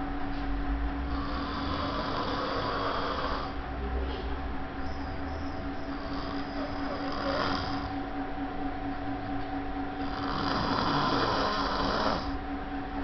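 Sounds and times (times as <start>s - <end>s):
steady background hum: 0.0s - 13.0s
pet snoring: 1.1s - 3.6s, 4.9s - 8.1s, 10.0s - 12.4s.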